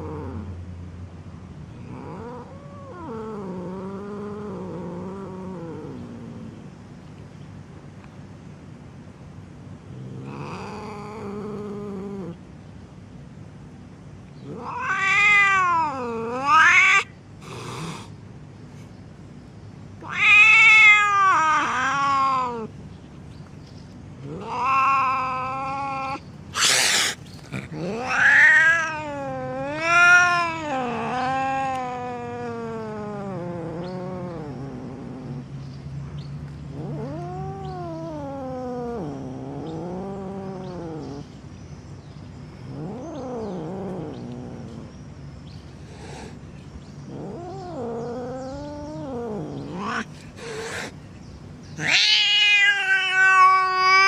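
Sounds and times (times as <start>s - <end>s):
cat yowling: 14.5s - 17.2s, 20.0s - 22.7s, 24.2s - 34.5s, 47.1s - 51.0s, 51.8s - 54.0s.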